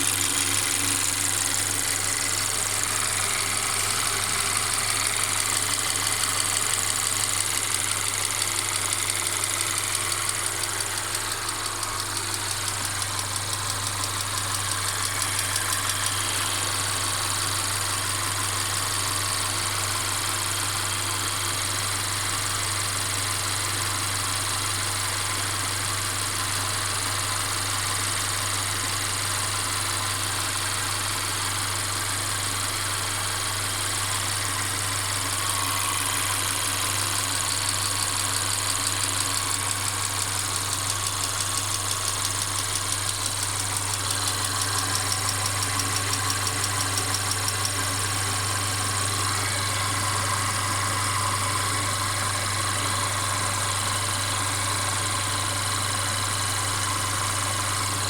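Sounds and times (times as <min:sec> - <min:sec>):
car engine rattling: 0:00.0 - 0:19.2, 0:34.1 - 0:58.0
fast pulsing clatter: 0:00.0 - 0:20.0, 0:34.0 - 0:58.0.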